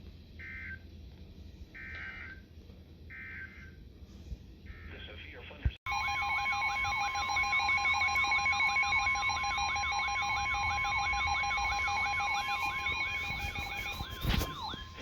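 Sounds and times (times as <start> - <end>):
electronic alarm tones: 5.9 - 15.0.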